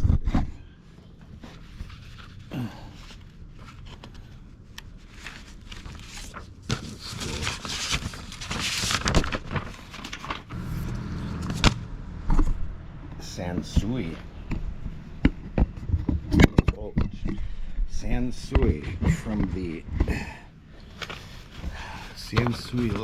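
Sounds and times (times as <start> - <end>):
paper rustling: 1.2 - 12.6, 20.8 - 23.0.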